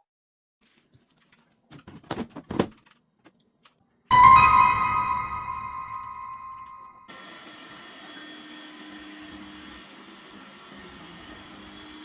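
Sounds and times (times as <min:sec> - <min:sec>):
piano music: 0:04.1 - 0:07.1.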